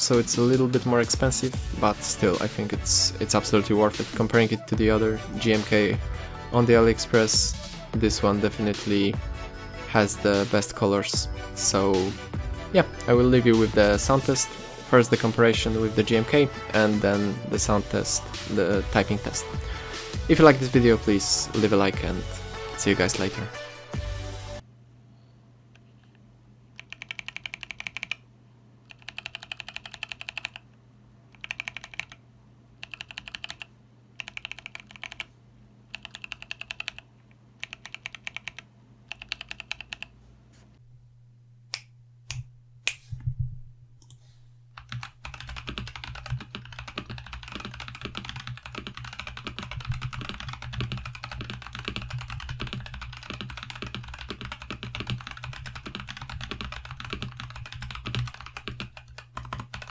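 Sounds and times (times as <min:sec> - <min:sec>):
typing on mechanical keyboard: 0:26.8 - 0:28.2, 0:28.9 - 0:30.6, 0:31.4 - 0:32.2, 0:32.8 - 0:35.3, 0:35.9 - 0:40.1, 0:44.8 - 0:59.9.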